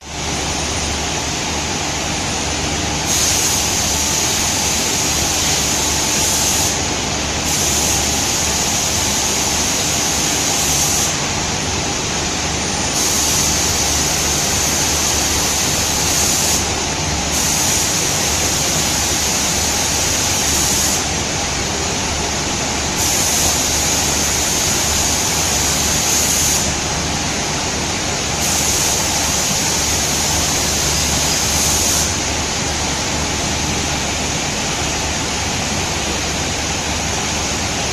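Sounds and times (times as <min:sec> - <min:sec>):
spray guns hissing: 0:03.0 - 0:11.3, 0:12.9 - 0:16.7, 0:17.3 - 0:21.1, 0:23.0 - 0:26.8, 0:28.4 - 0:32.2.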